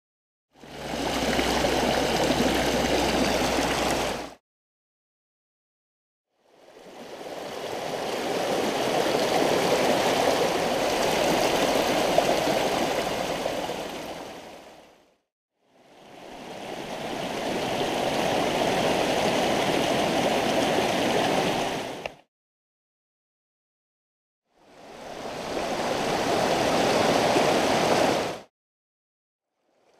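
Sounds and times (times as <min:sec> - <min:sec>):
mountain stream flowing: 0:00.6 - 0:04.4, 0:06.6 - 0:15.0, 0:16.0 - 0:22.2, 0:24.7 - 0:28.5.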